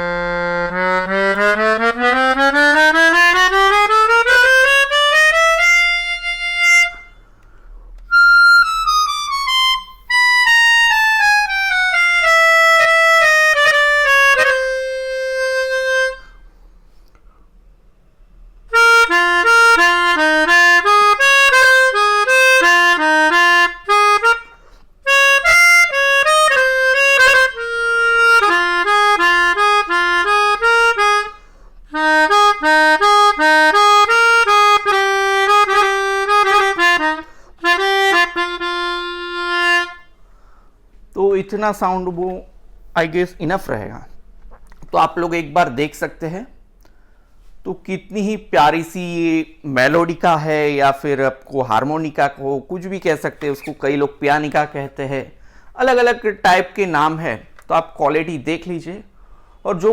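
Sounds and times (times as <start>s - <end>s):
melodica playing: 0.0s - 7.3s, 8.1s - 16.5s, 18.7s - 40.2s, 53.3s - 54.8s.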